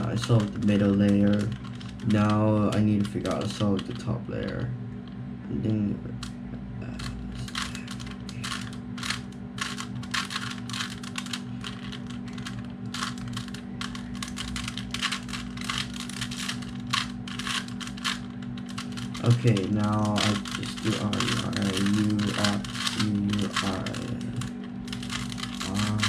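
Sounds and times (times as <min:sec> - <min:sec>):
steady low hum: 0:00.0 - 0:26.0
puzzle cube clicking: 0:07.0 - 0:26.0.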